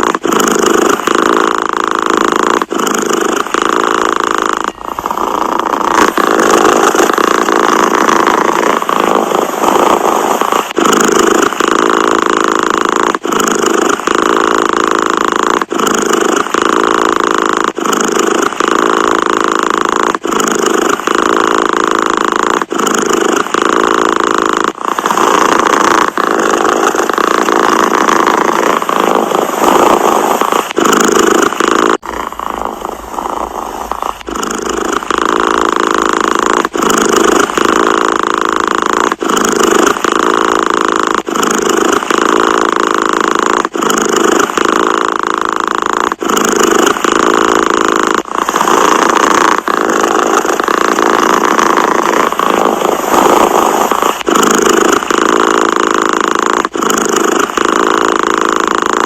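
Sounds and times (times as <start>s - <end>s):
cat purring: 0.0s - 59.0s.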